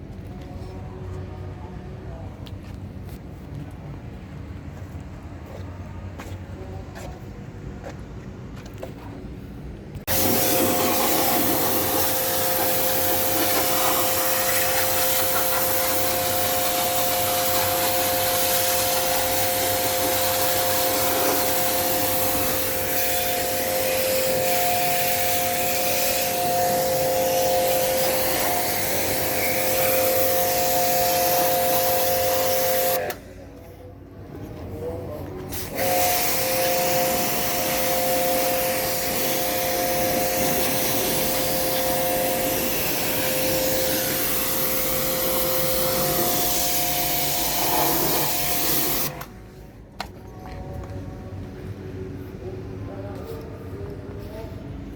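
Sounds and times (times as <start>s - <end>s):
cleaning machine hissing and whining: 10.1s - 33.2s, 35.5s - 49.3s.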